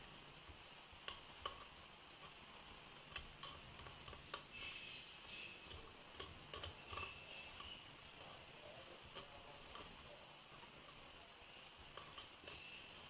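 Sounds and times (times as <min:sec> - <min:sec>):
high squeaky scrape: 0:04.2 - 0:06.1, 0:06.7 - 0:08.6.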